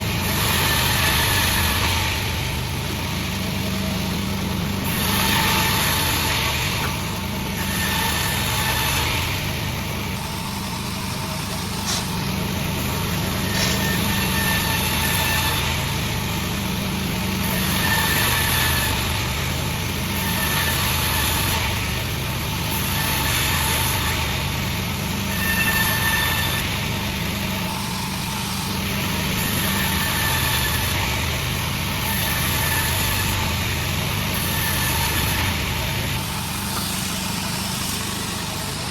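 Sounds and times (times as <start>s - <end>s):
blade rasping through log: 0.0s - 2.2s, 4.8s - 9.7s, 11.2s - 21.8s, 25.2s - 26.7s, 28.1s - 38.9s
sawmill saw running: 0.0s - 38.9s.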